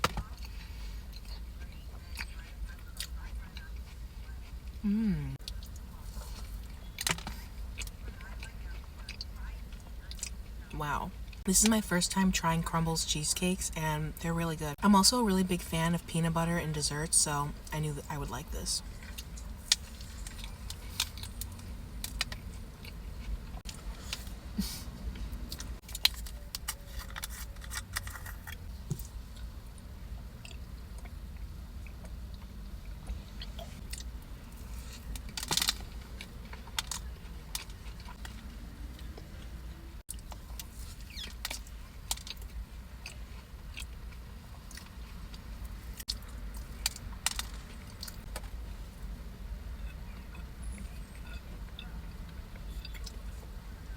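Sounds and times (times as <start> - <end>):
steady low hum: 0.0 - 53.9
person chewing: 0.2 - 10.4, 25.5 - 29.5, 49.8 - 53.5.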